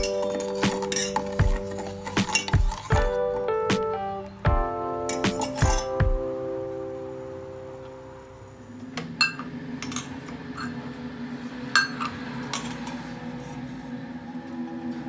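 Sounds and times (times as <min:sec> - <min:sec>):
utensils clinking against dishes: 0:00.0 - 0:03.4, 0:05.1 - 0:06.0, 0:09.2 - 0:10.9, 0:11.7 - 0:13.6.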